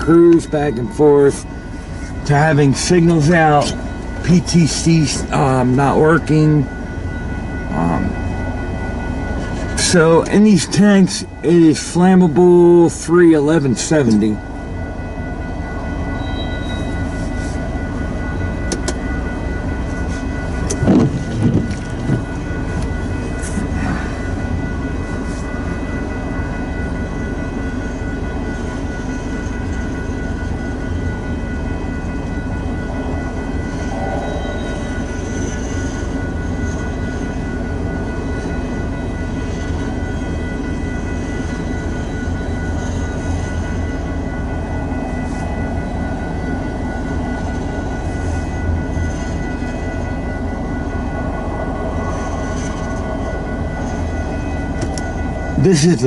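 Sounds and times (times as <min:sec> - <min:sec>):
train wheels rumbling on rail: 0:00.0 - 0:56.0
faint high ringing tone: 0:14.0 - 0:21.8, 0:24.0 - 0:56.0.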